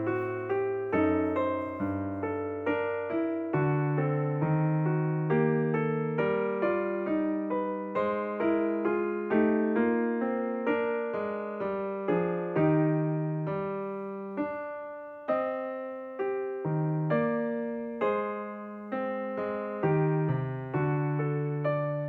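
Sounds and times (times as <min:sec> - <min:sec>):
slow gentle piano melody: 0:00.0 - 0:22.0.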